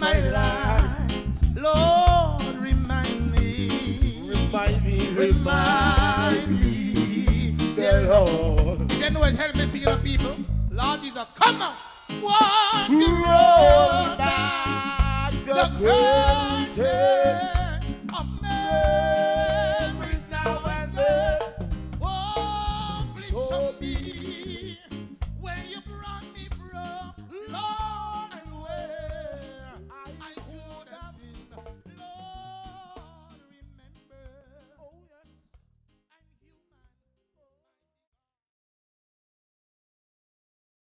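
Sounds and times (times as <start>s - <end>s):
person singing long sliding notes: 0.0s - 1.1s, 1.7s - 8.9s, 11.4s - 24.8s
live reggae band playing: 0.0s - 35.5s.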